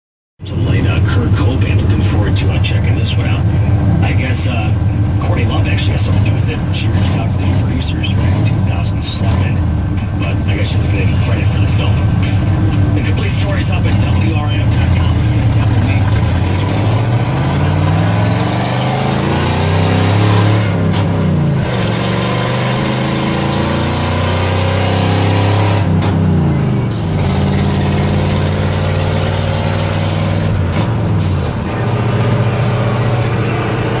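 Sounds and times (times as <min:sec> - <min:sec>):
truck engine accelerating: 0:00.4 - 0:34.0.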